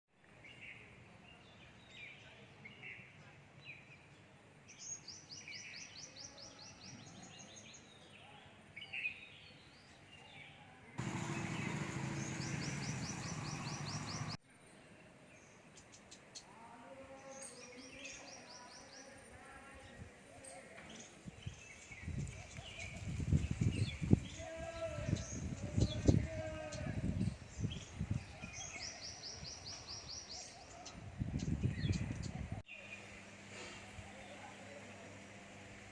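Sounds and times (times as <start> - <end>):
birds chirping and calling: 11.0 - 14.4, 19.9 - 34.6.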